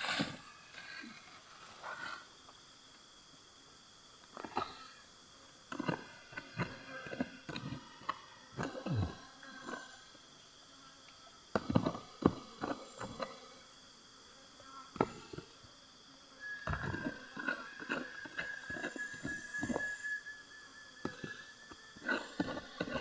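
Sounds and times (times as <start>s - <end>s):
digging knocks and scrapes: 0.0s - 2.3s, 5.7s - 9.8s, 11.6s - 13.5s, 16.5s - 20.2s, 21.0s - 23.0s
high insect whine: 0.0s - 23.0s
very high insect tone: 0.0s - 23.0s.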